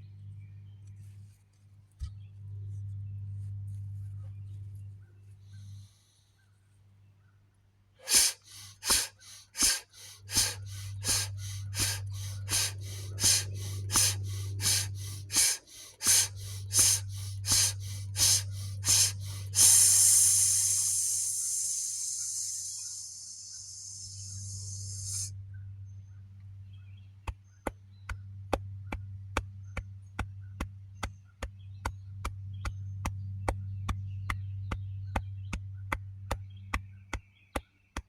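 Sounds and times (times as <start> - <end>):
long hissing exhale: 8.0 - 25.3
rapid forceful breathing: 8.0 - 25.3.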